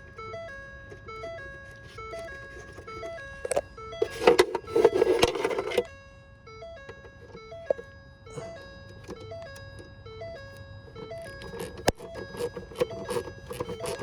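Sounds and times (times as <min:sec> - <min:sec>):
simple electronic melody: 0:00.0 - 0:14.0
scraping rustling handling noise: 0:00.9 - 0:05.9, 0:11.0 - 0:14.0.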